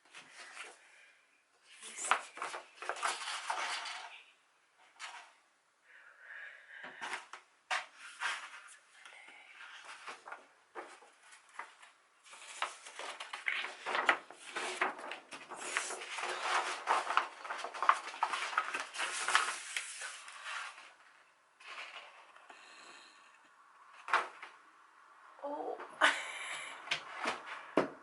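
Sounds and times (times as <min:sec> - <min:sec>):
paper and plastic packaging crinkling: 0:01.8 - 0:04.1, 0:09.8 - 0:22.3.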